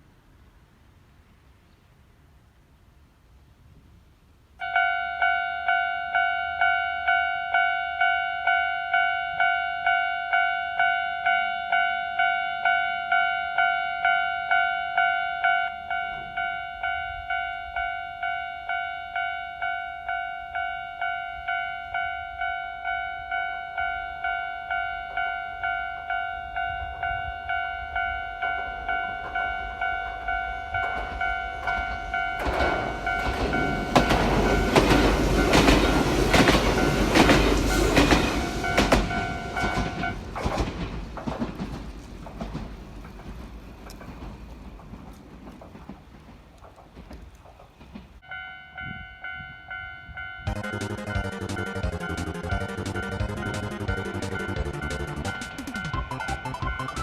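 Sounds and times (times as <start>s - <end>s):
rumble of approaching train: 2.4s - 57.0s
level crossing warning bell clanging: 4.6s - 40.3s, 48.2s - 57.0s.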